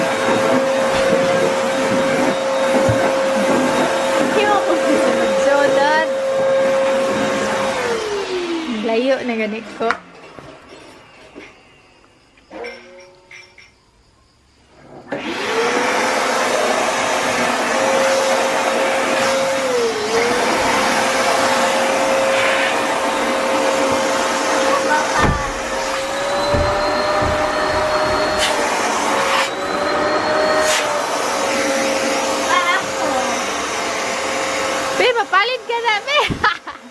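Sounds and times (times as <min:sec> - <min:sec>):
vacuum cleaner motor whine: 0:00.0 - 0:10.9, 0:14.8 - 0:36.9
low knocks: 0:25.2 - 0:28.4.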